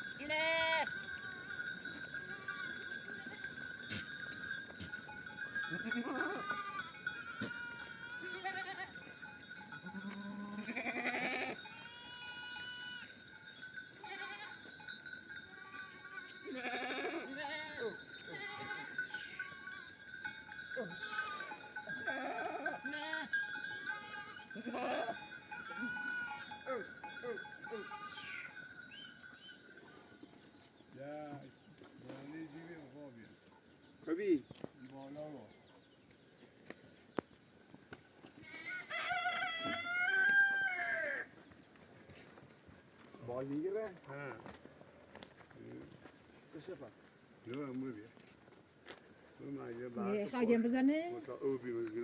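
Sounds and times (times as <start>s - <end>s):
herd bells ringing: 0.0s - 31.2s
goats bleating: 0.2s - 1.6s, 2.2s - 3.3s, 5.4s - 9.0s, 9.8s - 13.1s, 14.0s - 14.6s, 15.4s - 19.9s, 20.8s - 26.8s, 27.4s - 28.6s.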